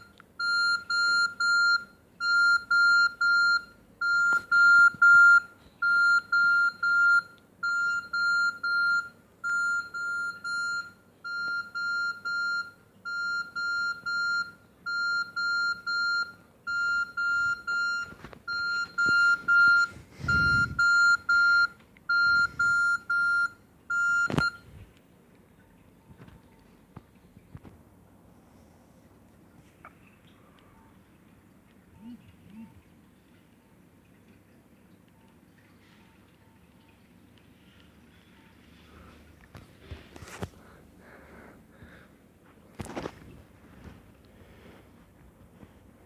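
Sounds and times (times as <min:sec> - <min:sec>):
phone beeping ringtone: 0:00.4 - 0:24.6.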